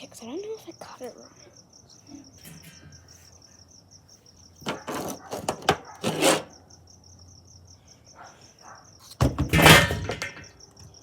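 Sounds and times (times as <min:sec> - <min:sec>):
crickets chirping: 0:00.0 - 0:11.0
clatter and scraping at a grill: 0:02.1 - 0:03.4, 0:04.6 - 0:06.6, 0:09.0 - 0:11.0.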